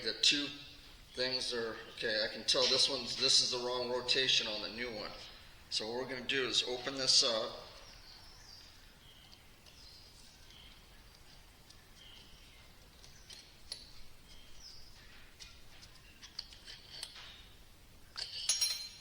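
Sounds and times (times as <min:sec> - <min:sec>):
birds chirping: 0:00.0 - 0:18.1
metal parts clicking: 0:15.4 - 0:17.5, 0:18.1 - 0:19.0
parts rattling: 0:18.1 - 0:19.0.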